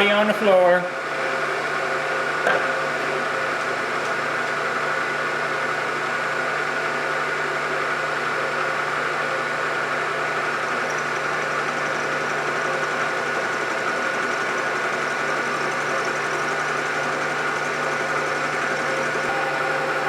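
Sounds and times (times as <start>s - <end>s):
milling machine cutting steel: 2.7s - 5.5s, 9.2s - 20.0s.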